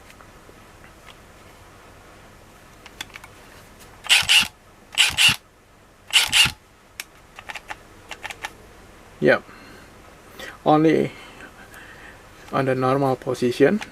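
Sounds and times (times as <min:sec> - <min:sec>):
impact wrench spinning up: 0:04.0 - 0:05.4, 0:06.1 - 0:06.6.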